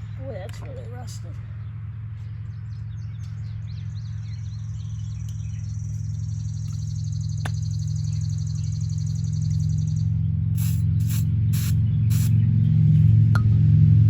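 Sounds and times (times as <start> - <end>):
birds chirping: 0.0 - 13.4
high pulsing buzz: 4.5 - 14.0
pool pump motor humming: 10.6 - 13.5.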